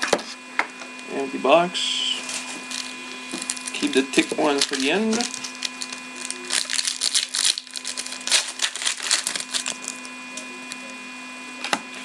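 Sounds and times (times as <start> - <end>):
electrical hum: 0.0 - 12.0
plastic wrapper crinkling: 2.2 - 10.8.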